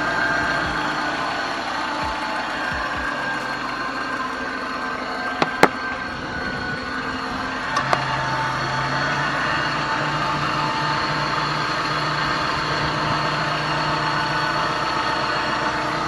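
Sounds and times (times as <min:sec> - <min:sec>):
ac compressor noise: 0:00.0 - 0:16.0
car engine idling: 0:00.0 - 0:16.0.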